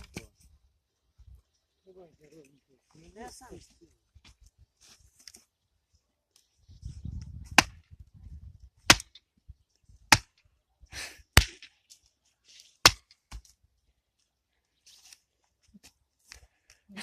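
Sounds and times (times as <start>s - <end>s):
axe chopping firewood: 7.4s - 7.9s, 8.8s - 9.2s, 10.1s - 10.5s, 11.3s - 11.8s, 12.8s - 13.6s.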